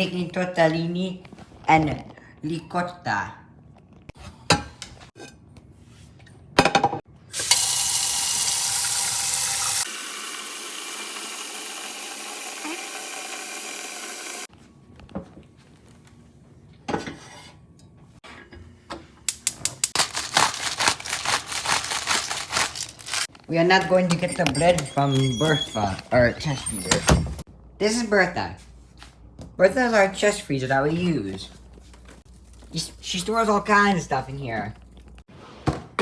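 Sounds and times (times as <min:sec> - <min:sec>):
kitchen tap running: 0:07.3 - 0:14.5.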